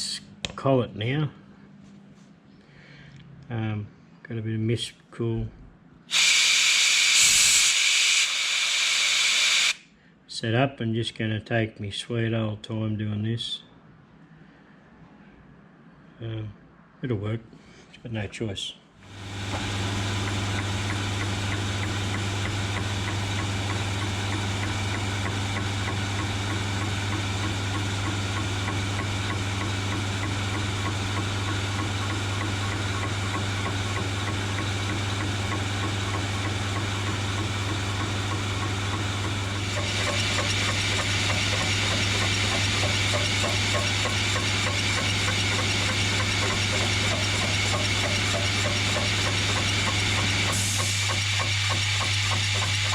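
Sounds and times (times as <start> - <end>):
mist coolant sprayer hissing: 6.1 - 9.8, 19.1 - 52.9
machine tool motor humming: 19.0 - 52.9.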